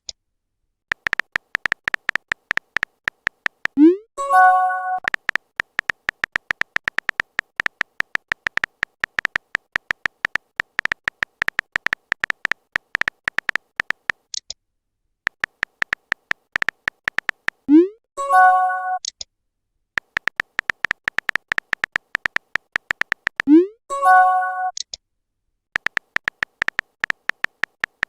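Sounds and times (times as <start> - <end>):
phone keyboard typing clicks: 0.9 - 3.9, 4.9 - 14.4, 15.3 - 17.8, 20.0 - 23.6, 25.8 - 28.0
chiming message alert: 4.2 - 5.1, 18.2 - 19.0, 23.9 - 24.7.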